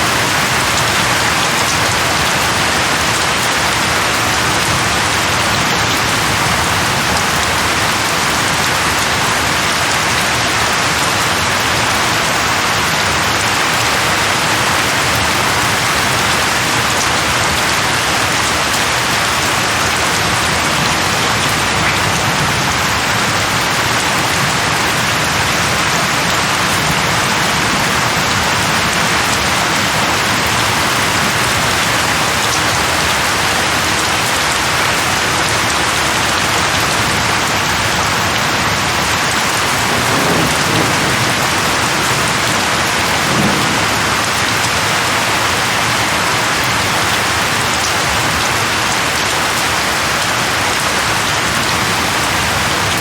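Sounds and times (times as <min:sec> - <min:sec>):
heavy rain on leaves: 0:00.0 - 0:53.0
low thunder rumbles: 0:39.6 - 0:45.0.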